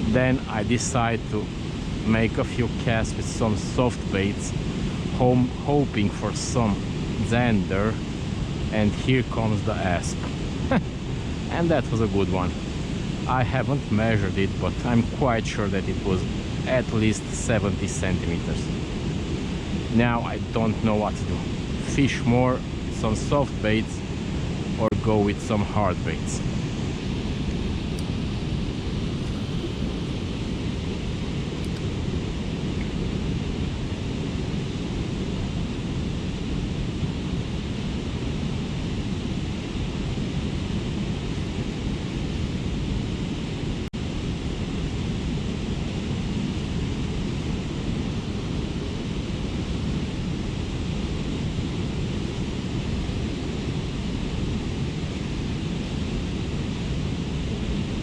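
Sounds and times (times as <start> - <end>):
wind buffeting microphone: 23.9 - 58.0.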